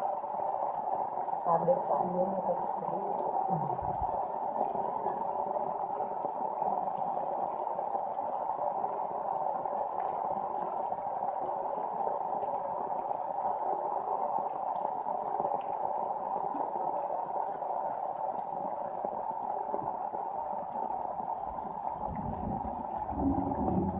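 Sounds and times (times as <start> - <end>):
water rushing: 21.2 - 23.9.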